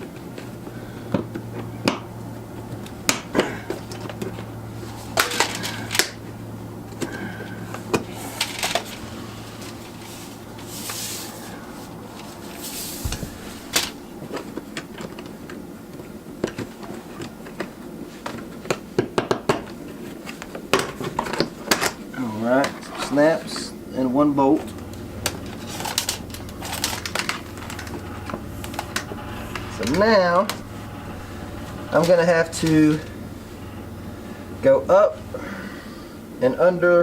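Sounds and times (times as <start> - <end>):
steady low hum: 0.0 - 19.0, 19.6 - 37.0.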